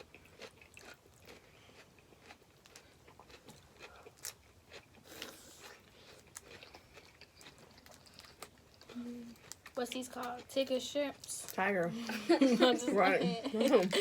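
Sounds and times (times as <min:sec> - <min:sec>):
chewing: 0:00.0 - 0:11.6.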